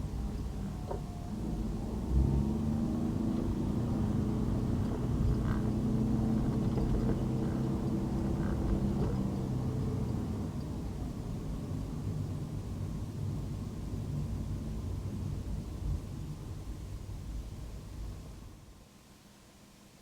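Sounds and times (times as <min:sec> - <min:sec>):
car engine hum: 0:00.0 - 0:13.3
road noise: 0:00.0 - 0:13.7.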